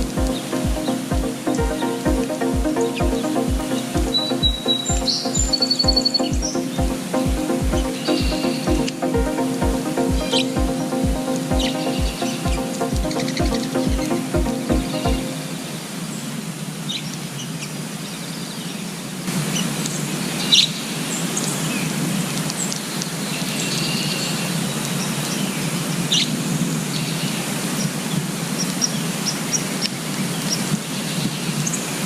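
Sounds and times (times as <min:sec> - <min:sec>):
steady rushing noise: 0:00.0 - 0:16.1.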